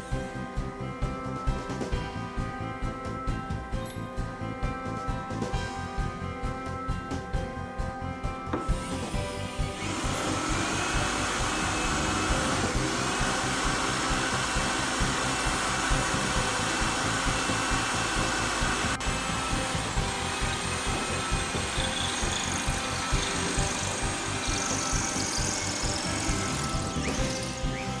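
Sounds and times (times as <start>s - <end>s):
background music: 0.0s - 28.0s
electric power tool motor running: 8.6s - 28.0s.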